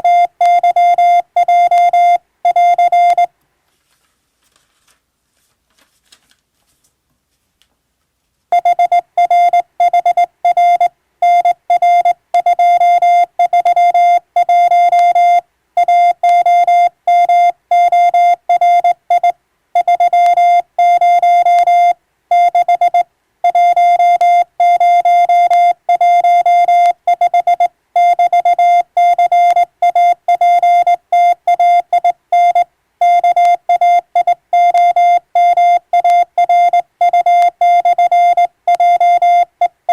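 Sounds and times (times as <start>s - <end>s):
morse code beeps: 0.0s - 3.3s, 8.5s - 39.9s.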